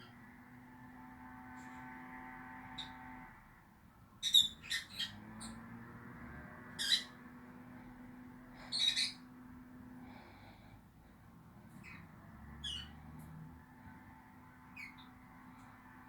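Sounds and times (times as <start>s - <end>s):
lovebirds chirping: 4.2s - 5.6s, 8.6s - 9.2s.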